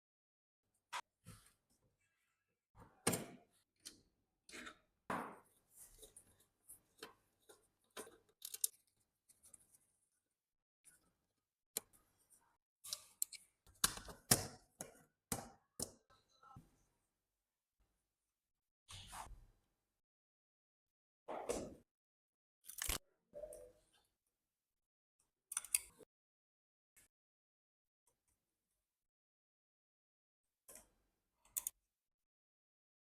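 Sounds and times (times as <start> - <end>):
metal parts clicking and scraping: 8.0 - 8.8.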